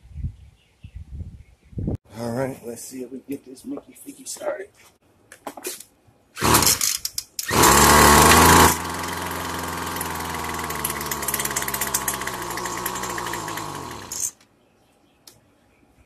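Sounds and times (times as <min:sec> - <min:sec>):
string trimmer engine idling: 0:06.4 - 0:06.8, 0:07.4 - 0:14.4
string trimmer pull-start: 0:06.4 - 0:14.4.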